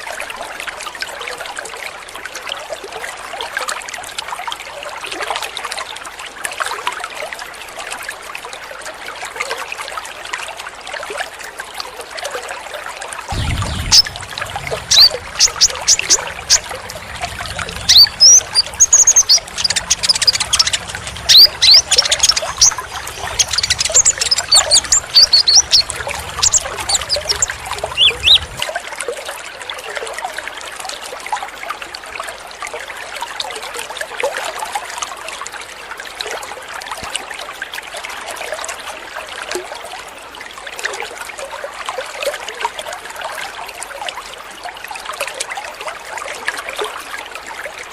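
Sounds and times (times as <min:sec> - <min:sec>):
sunbird chirps and twitters: 0:13.3 - 0:28.6
running water trickling: 0:13.3 - 0:29.9.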